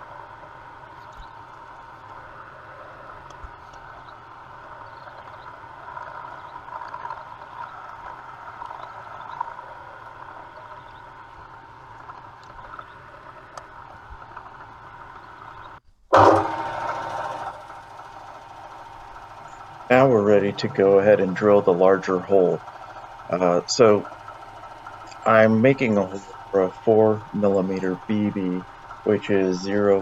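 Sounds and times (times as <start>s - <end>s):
burst of machine noise: 16.1s - 29.5s
drilling machine cutting steel: 16.1s - 30.0s.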